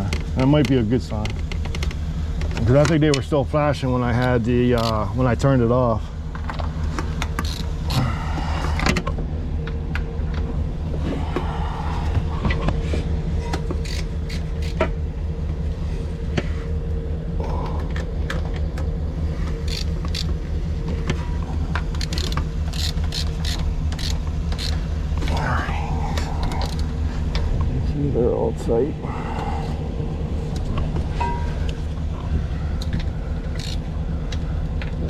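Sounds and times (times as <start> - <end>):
vehicle engine idling: 0.0 - 35.0
metallic tool clicks and knocks: 13.5 - 14.9, 21.8 - 24.8, 32.8 - 35.0.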